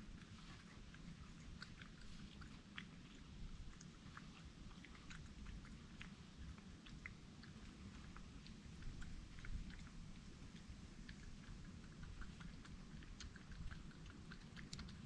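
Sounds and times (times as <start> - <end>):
animal chewing and crunching: 0.0 - 15.0
low steady rumble: 0.0 - 15.0.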